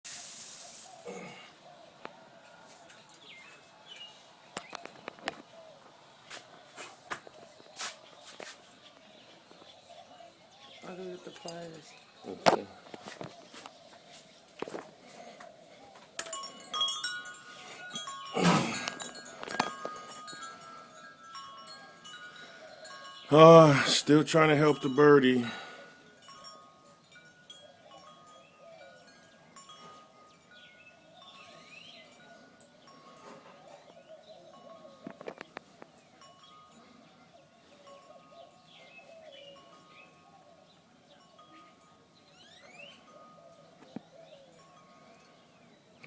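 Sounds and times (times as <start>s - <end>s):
bird chirps: 27.5s - 45.8s.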